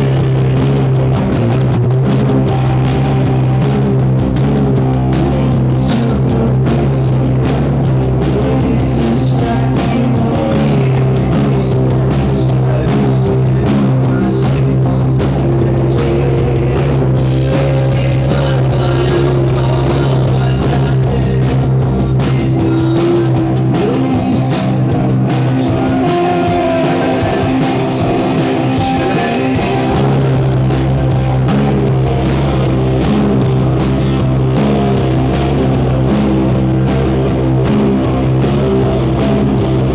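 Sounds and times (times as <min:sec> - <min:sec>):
bass guitar: 0:00.0 - 0:39.9
distorted electric guitars: 0:00.0 - 0:39.9
drum kit: 0:00.0 - 0:39.9
person singing: 0:05.4 - 0:32.0.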